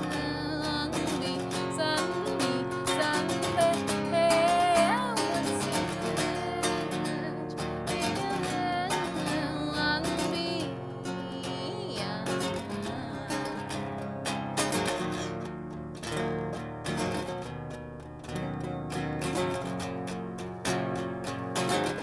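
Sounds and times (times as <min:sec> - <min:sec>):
woman singing: 0:00.0 - 0:14.1
acoustic guitar strumming: 0:00.0 - 0:22.0.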